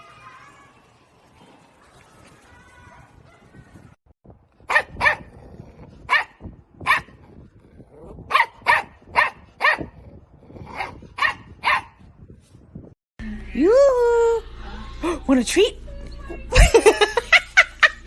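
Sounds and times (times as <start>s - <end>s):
dog barking: 4.7s - 5.3s, 6.1s - 7.2s, 8.3s - 10.0s, 10.8s - 12.0s.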